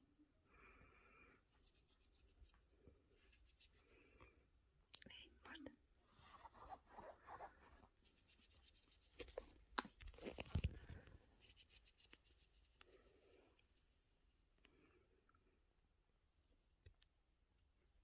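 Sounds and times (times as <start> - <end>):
soft rustling and crackling: 5.9 - 14.2.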